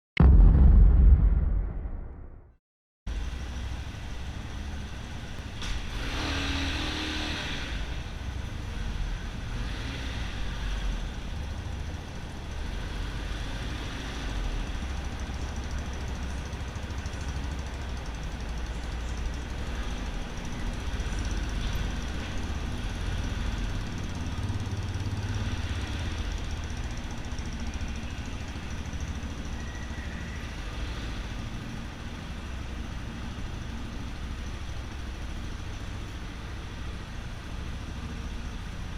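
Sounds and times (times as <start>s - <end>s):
motorcycle engine deep rumble: 14.4s - 38.9s.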